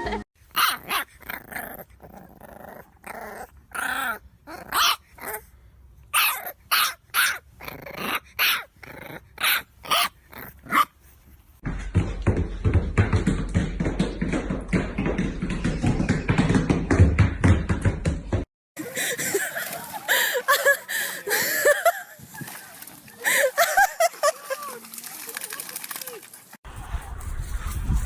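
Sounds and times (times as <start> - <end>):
dog barking and growling: 0.4 - 5.5, 6.1 - 11.1.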